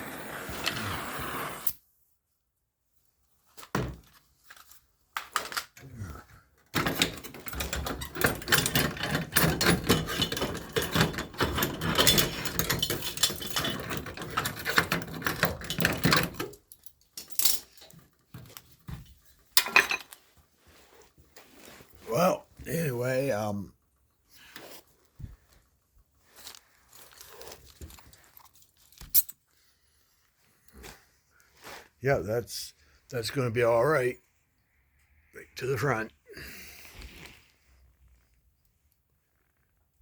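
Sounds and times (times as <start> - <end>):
welder crackling: 0.0 - 1.8
metal clicks and knocks: 6.7 - 19.0.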